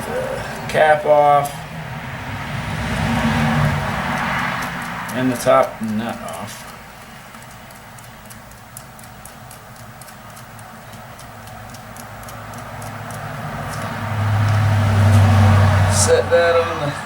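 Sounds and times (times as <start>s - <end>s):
light even ticking: 3.6s - 15.7s.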